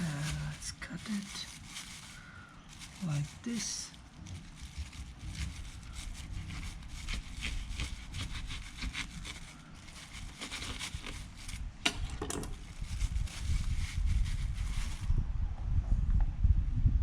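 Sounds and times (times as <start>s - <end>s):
knife cutting through fruit: 5.3s - 11.6s.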